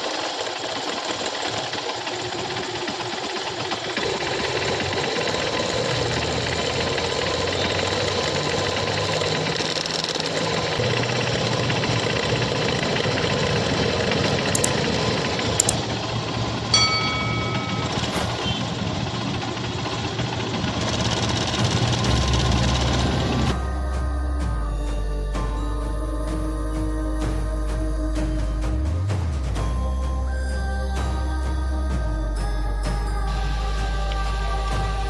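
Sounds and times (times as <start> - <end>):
motorcycle engine running: 0.0 - 35.0
metallic cam chain rattle: 14.2 - 15.8.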